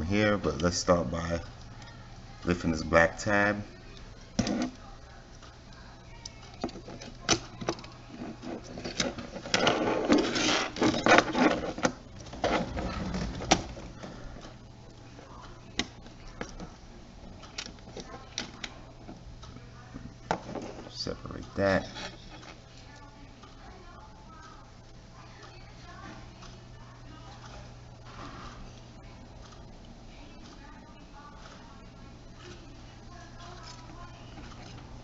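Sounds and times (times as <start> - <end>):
steady low hum: 0.0 - 35.0
tool clicking and scraping plastic: 6.6 - 13.8.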